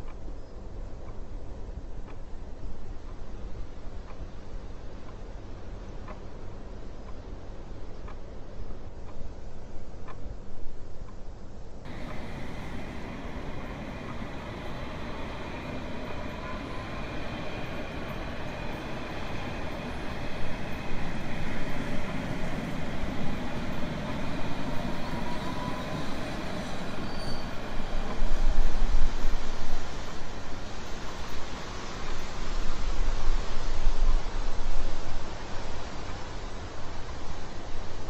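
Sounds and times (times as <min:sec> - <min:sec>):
train running on rails: 0:11.8 - 0:38.0.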